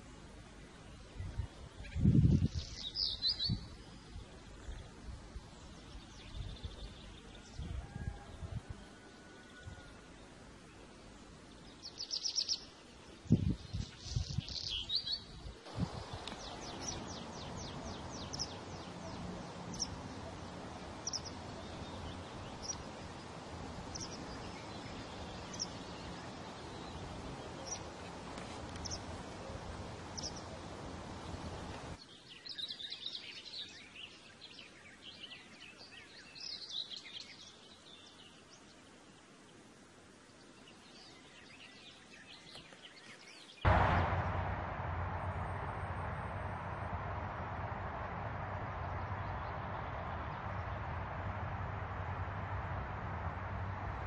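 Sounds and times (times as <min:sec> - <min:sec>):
varied birdsong: 0:00.0 - 0:44.0, 0:45.3 - 0:52.8
steady background hiss: 0:00.0 - 0:54.0
bird chirping: 0:00.6 - 0:07.7, 0:10.2 - 0:38.7
low thumps: 0:43.7 - 0:54.0.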